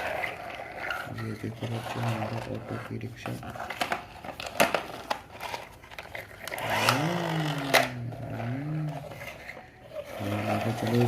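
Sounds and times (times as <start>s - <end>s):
man's wordless vocal sound: 6.8s - 9.1s.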